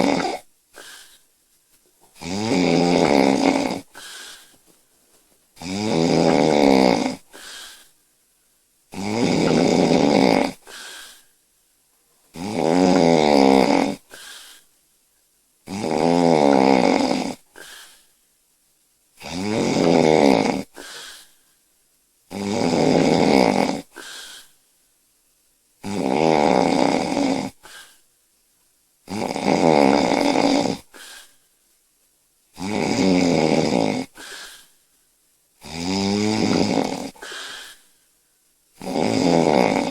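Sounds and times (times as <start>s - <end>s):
woman snoring: 0.0s - 1.2s, 2.2s - 4.5s, 5.6s - 7.9s, 8.9s - 11.3s, 12.3s - 14.6s, 15.6s - 18.0s, 19.2s - 21.4s, 22.3s - 24.5s, 25.8s - 28.0s, 29.1s - 31.4s, 32.6s - 34.8s, 35.6s - 37.9s, 38.8s - 39.9s
faint breath sound: 0.4s - 2.2s, 3.8s - 5.4s, 7.2s - 8.1s, 10.6s - 11.4s, 14.0s - 14.8s, 17.4s - 18.2s, 20.6s - 21.6s, 23.8s - 24.7s, 27.5s - 28.2s, 30.8s - 31.6s, 34.1s - 35.0s, 36.8s - 38.2s.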